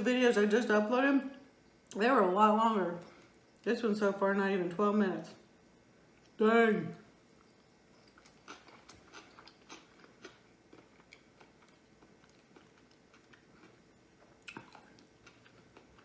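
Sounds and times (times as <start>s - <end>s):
wet mouth chewing clicks: 8.0s - 16.0s.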